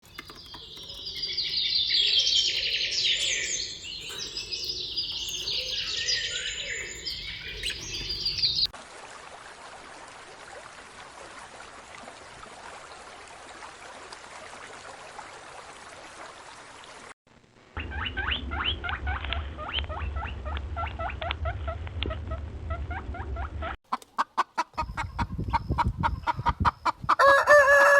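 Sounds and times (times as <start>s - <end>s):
birds chirping: 0.0s - 8.7s.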